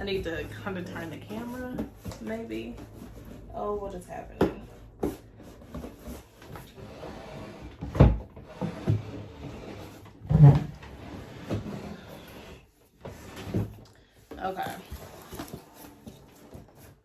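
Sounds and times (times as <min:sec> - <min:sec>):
handling rustling and scraping: 0:00.0 - 0:17.0.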